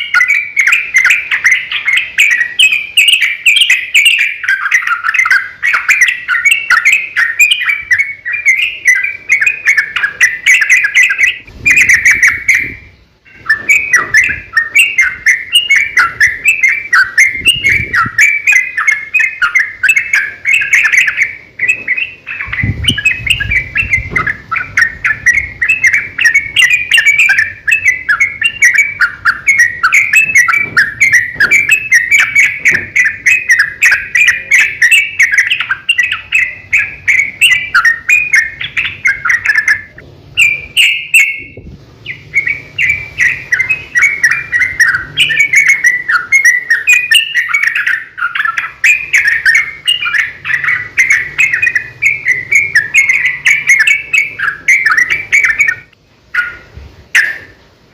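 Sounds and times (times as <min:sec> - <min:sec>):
bulbul chirping song: 0:00.0 - 0:57.8.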